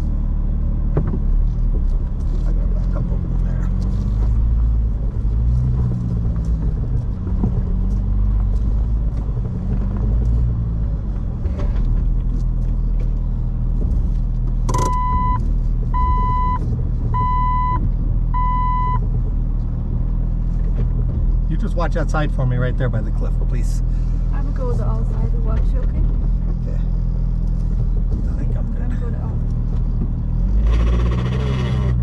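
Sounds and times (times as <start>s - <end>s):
engine running at low speed: 0.0s - 32.0s
electronic beeps from vehicle: 14.7s - 19.0s.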